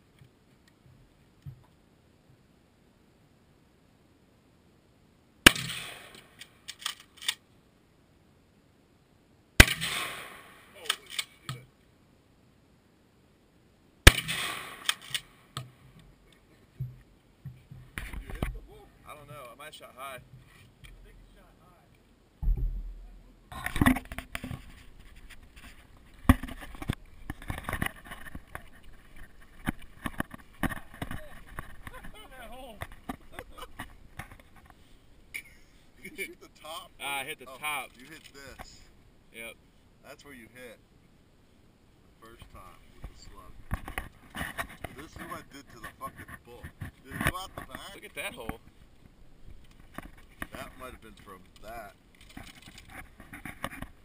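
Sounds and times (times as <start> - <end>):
shotgun shot: 5.4 - 6.3, 9.6 - 10.9, 14.0 - 15.3
scattered knocks: 16.8 - 18.6, 22.4 - 23.0
scraping and rustling: 20.2 - 21.4, 22.4 - 36.2, 42.7 - 54.0.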